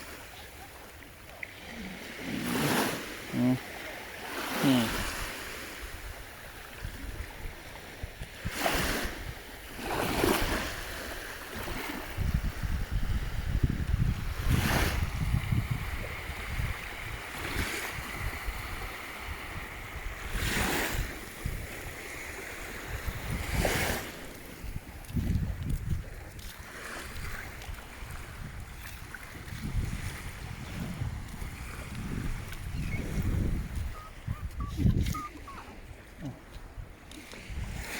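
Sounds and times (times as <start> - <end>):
sea waves washing onto beach: 0.0 - 37.9
wind buffeting microphone: 11.6 - 37.9.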